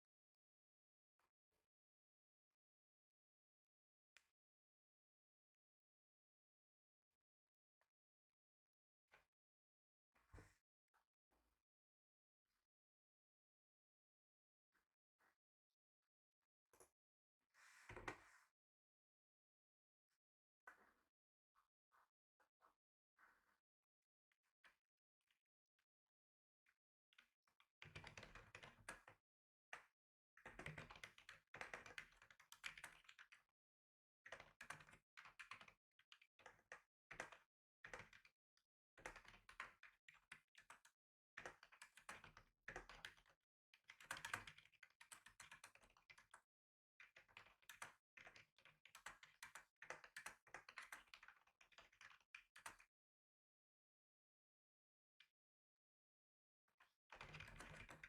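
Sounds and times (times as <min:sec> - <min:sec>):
typing on keyboard: 0:43.9 - 0:46.4.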